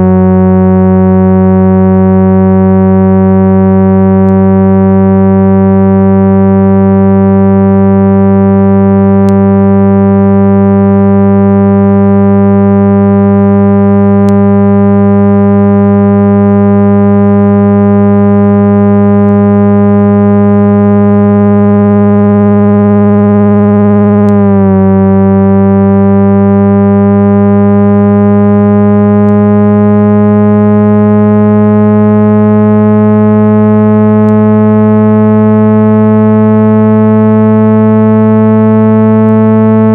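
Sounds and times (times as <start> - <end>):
low buzzy tone from speaker: 0.0 - 39.9.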